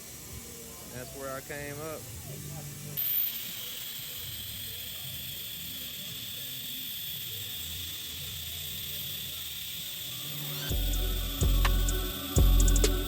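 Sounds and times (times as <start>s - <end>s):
faint hum: 0.0s - 13.0s
welding arc hissing: 0.0s - 13.0s.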